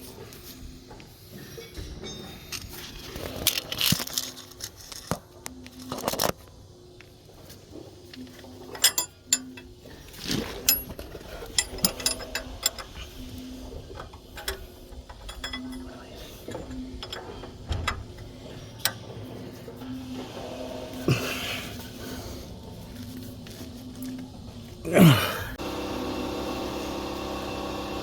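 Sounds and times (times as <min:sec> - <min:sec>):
metal tools knocking on steel: 0:01.5 - 0:02.6, 0:08.7 - 0:09.7, 0:14.1 - 0:18.2.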